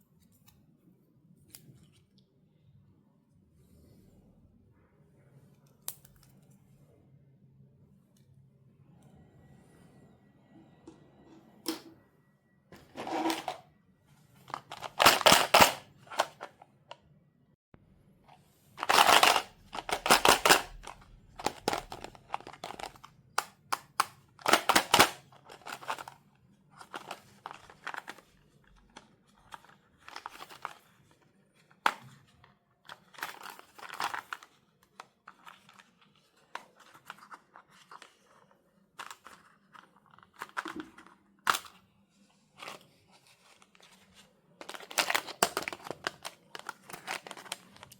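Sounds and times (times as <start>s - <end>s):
plastic and cardboard rustling: 12.8s - 13.6s, 14.2s - 16.6s, 18.8s - 23.1s, 23.9s - 47.9s
packaging clicks and snaps: 14.5s - 16.5s, 18.8s - 26.2s, 26.8s - 28.2s, 28.8s - 30.8s, 32.9s - 38.2s, 44.6s - 47.9s.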